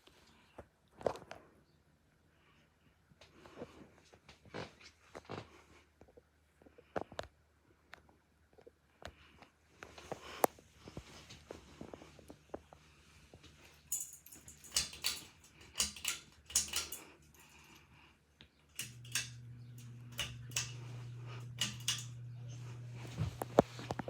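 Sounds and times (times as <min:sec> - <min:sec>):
ceiling fan clicks and rattles: 0:09.8 - 0:24.0
low motor hum: 0:18.7 - 0:24.0.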